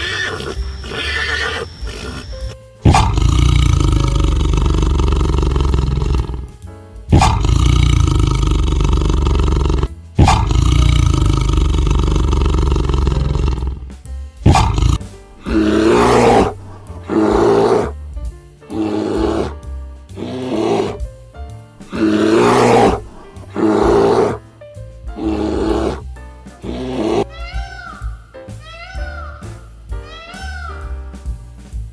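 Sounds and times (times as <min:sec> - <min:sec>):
lion grunting calls: 0:00.0 - 0:17.9, 0:18.7 - 0:21.0, 0:21.8 - 0:24.4, 0:25.2 - 0:26.0, 0:26.6 - 0:27.3
background music: 0:00.0 - 0:31.9
lion roaring: 0:02.9 - 0:17.9, 0:18.7 - 0:19.6, 0:20.2 - 0:21.0, 0:21.8 - 0:24.4, 0:25.2 - 0:26.0, 0:26.6 - 0:27.3.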